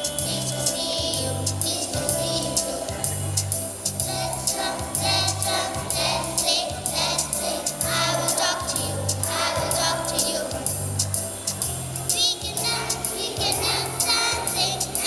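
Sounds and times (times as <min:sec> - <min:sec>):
children singing together: 0:00.0 - 0:10.8, 0:12.1 - 0:15.0
instrumental accompaniment with beat: 0:00.0 - 0:15.0.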